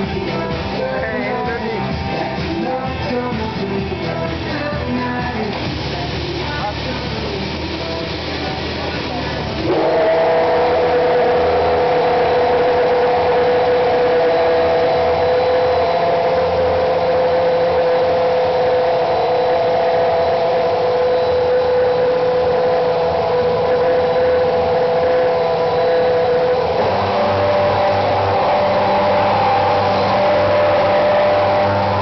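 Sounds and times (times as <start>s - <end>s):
racing car engine running: 0.0s - 32.0s.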